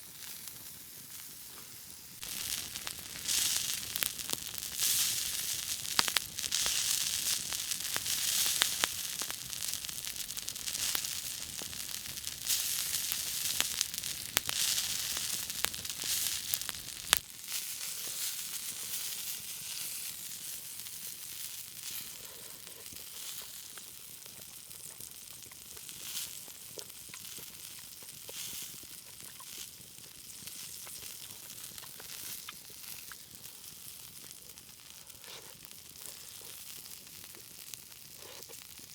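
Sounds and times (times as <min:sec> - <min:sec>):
meat sizzling on grill: 0:00.0 - 0:38.9.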